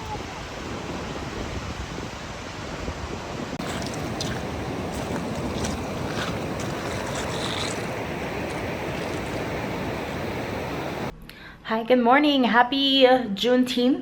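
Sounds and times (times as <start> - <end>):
ocean surf rushing: 0.0 - 11.1
wind: 0.0 - 11.3.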